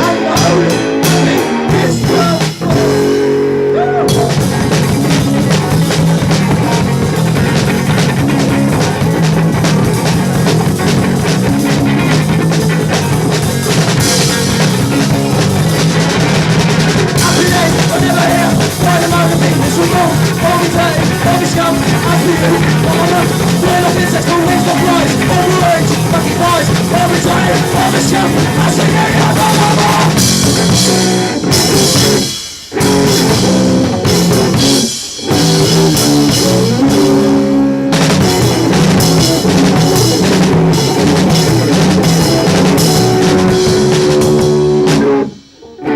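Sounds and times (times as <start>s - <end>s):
live rock band playing: 0.0s - 45.9s.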